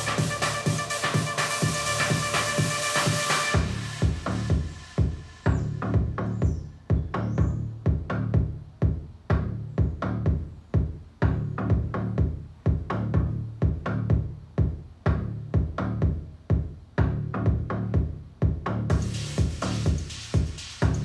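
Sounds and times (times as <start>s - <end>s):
electronic dance music: 0.0s - 7.0s, 18.9s - 21.0s
deep bass: 0.0s - 21.0s
drum machine beat: 0.0s - 21.0s.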